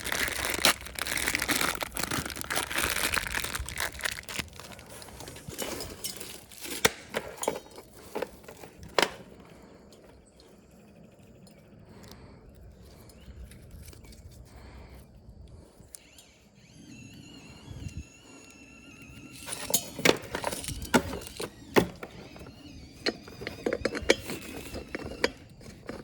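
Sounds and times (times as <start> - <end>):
rustling and light handling: 0.0 - 10.4, 19.4 - 26.0
small hard parts clinking: 0.0 - 10.5, 11.4 - 26.0.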